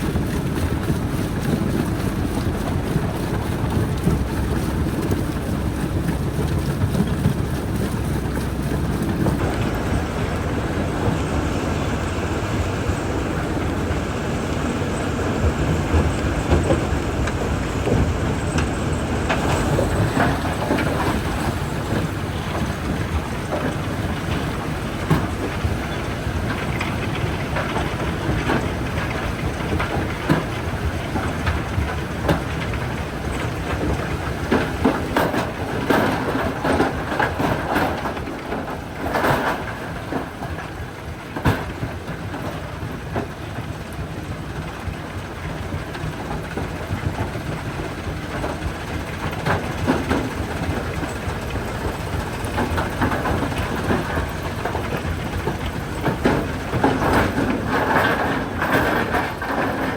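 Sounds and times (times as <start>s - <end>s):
jaw crusher rumbling: 0.0s - 38.6s.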